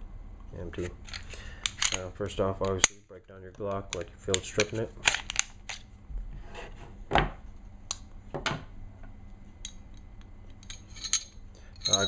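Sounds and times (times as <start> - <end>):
metal parts rubbing: 10.6 - 12.0.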